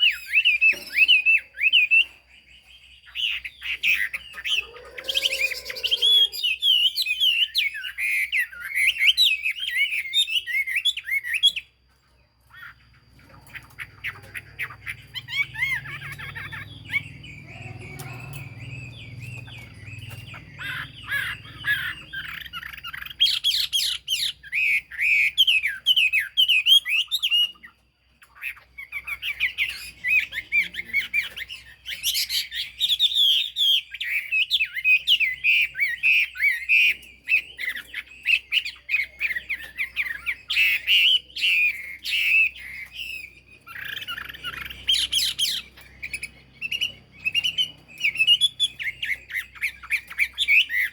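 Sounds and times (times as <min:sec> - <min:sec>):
bird singing whistled phrases: 0:02.9 - 0:11.7.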